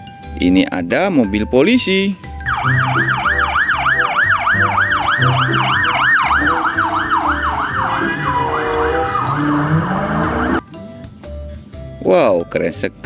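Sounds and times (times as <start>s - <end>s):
toy electronic siren wailing: 2.4s - 10.6s.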